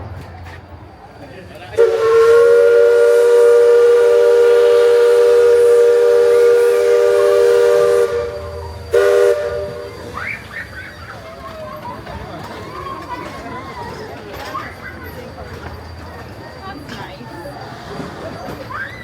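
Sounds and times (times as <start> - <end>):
steam whistle chord blasts: 1.8 - 10.0.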